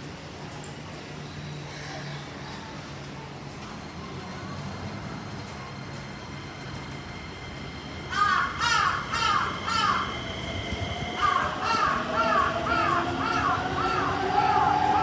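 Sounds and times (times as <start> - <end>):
crow cawing: 8.1 - 10.1, 11.2 - 14.6.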